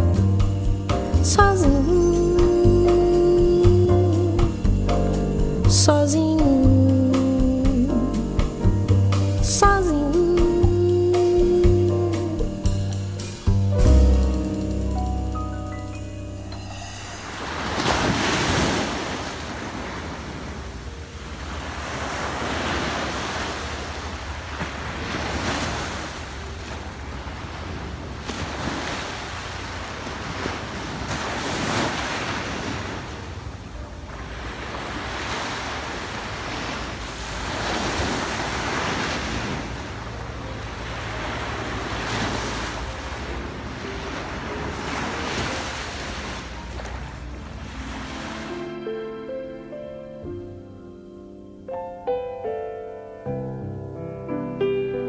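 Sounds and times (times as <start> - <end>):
sea waves breaking on shore: 16.7 - 50.0.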